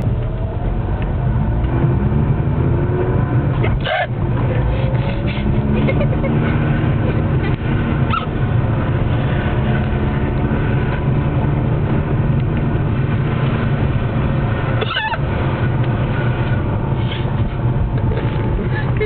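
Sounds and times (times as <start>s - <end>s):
car cabin road and engine drone: 0.0s - 19.0s
person hiccuping: 3.6s - 4.1s.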